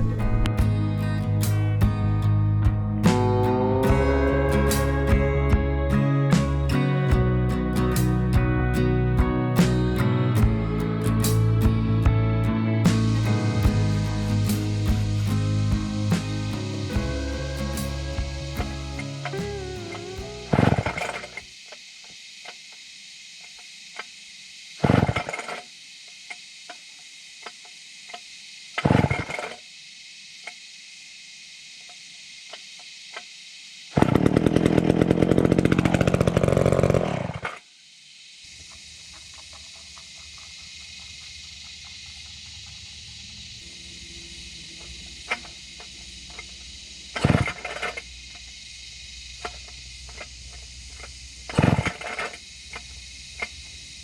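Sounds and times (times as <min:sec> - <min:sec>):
chainsaw engine running: 0:01.5 - 0:21.4, 0:34.0 - 0:37.4.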